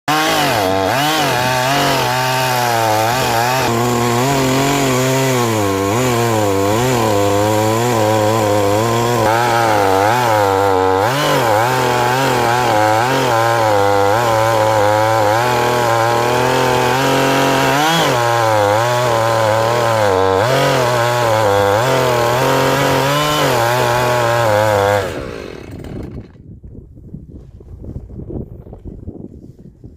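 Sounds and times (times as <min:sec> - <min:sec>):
chainsaw cutting wood: 0:00.1 - 0:26.4.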